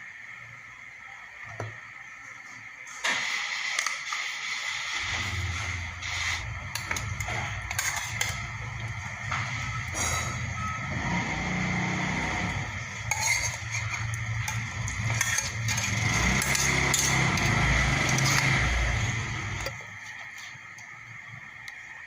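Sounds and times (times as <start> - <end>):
cutlery clinking against a plate: 13.0 - 17.5.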